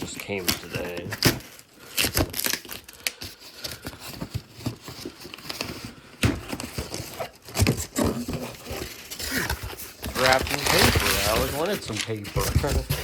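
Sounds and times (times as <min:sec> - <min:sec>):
packing paper crinkling: 0:00.0 - 0:13.0.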